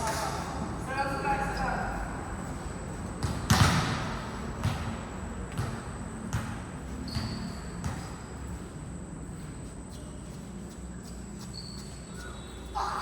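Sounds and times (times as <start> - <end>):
volleyball thuds: 3.2 - 6.6.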